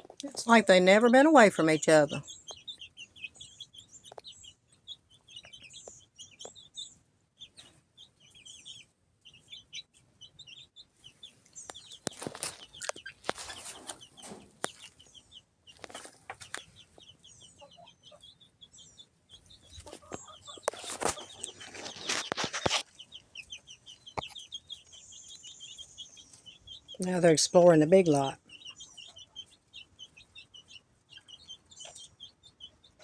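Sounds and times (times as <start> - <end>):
chicks peeping: 0.0 - 33.0
clicks and rustling: 19.9 - 23.0.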